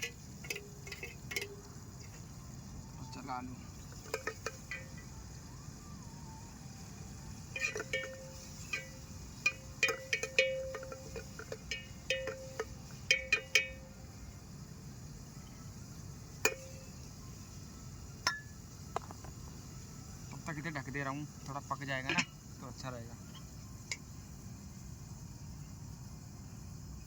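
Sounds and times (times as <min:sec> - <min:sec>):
metal spoon scraping cooking pot: 0:00.0 - 0:02.2, 0:04.0 - 0:04.8, 0:07.6 - 0:13.6
onions frying: 0:00.0 - 0:26.9.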